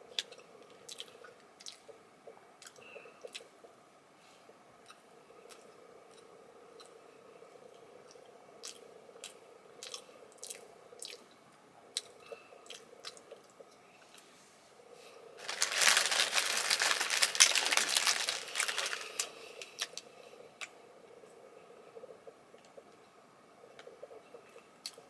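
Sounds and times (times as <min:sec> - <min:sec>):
plastic wrapper crinkling: 0:15.4 - 0:20.0.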